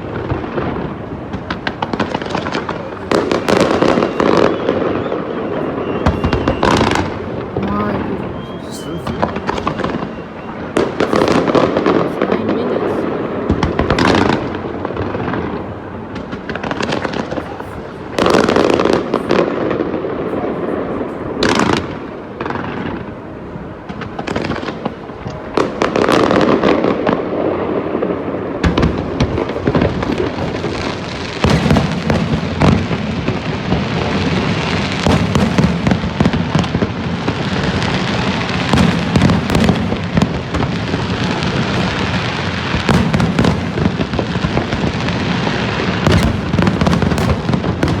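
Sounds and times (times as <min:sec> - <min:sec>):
fireworks crackling: 0:00.0 - 0:48.0
firework shell bursts booming: 0:28.6 - 0:48.0.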